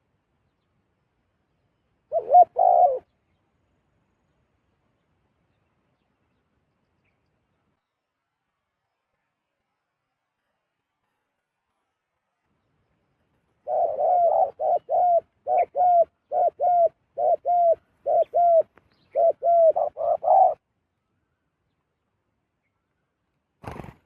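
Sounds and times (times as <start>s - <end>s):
dove cooing: 2.1s - 3.1s, 13.6s - 20.6s.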